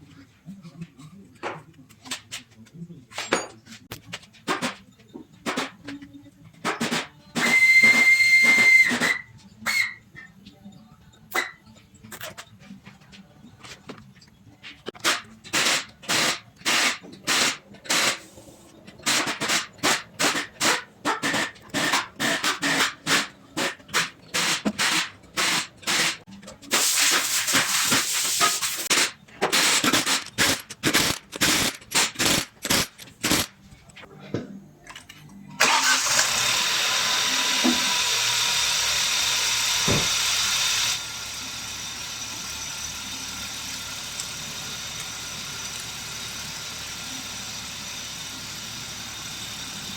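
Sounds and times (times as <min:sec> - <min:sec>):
short bursts of noise: 0:19.0 - 0:33.5.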